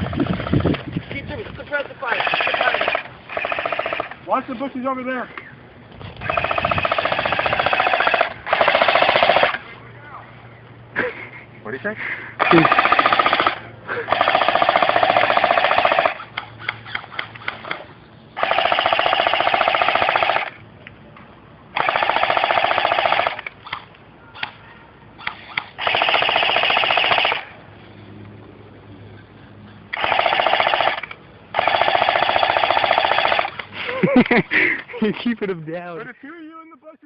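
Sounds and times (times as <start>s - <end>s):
airsoft guns firing bursts: 2.0s - 4.2s, 6.2s - 9.6s, 12.4s - 16.3s, 18.4s - 20.6s, 21.7s - 23.5s, 25.7s - 27.5s, 29.9s - 33.6s.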